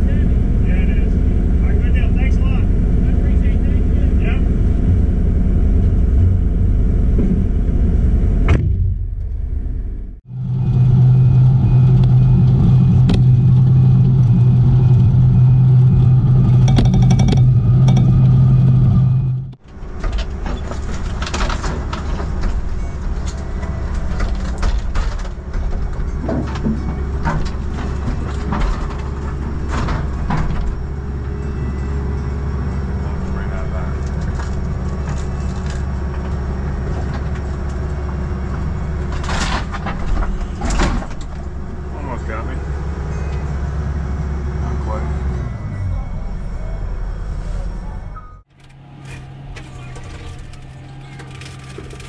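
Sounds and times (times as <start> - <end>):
excavator diesel engine running: 10.2 - 52.0
demolition debris knocking and clattering: 19.9 - 30.8.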